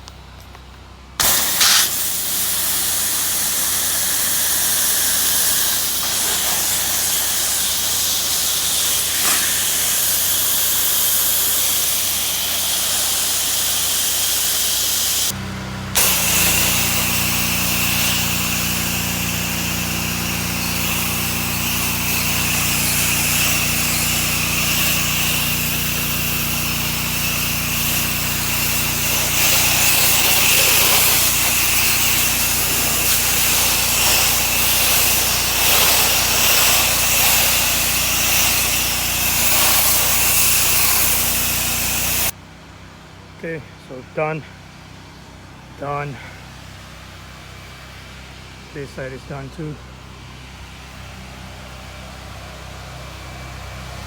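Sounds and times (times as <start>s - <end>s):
engine hum: 0.0s - 54.0s
pressure washer water jet hiss: 1.2s - 42.4s.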